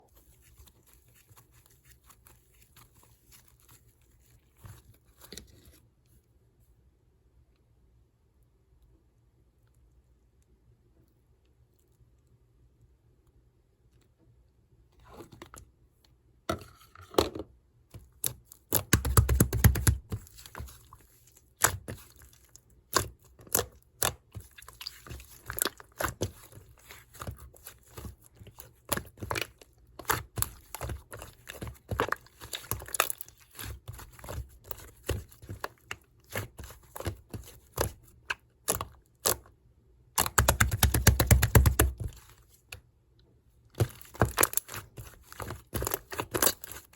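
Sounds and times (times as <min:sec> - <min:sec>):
slime squished by hand: 0:18.1 - 0:39.5, 0:40.2 - 0:42.8.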